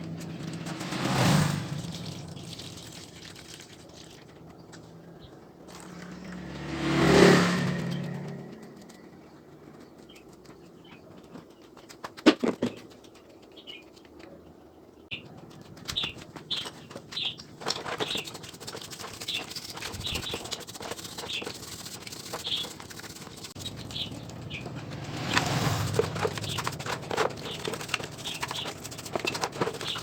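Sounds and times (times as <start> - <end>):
small bird chirping: 15.0 - 18.4, 19.0 - 25.5, 26.2 - 30.0.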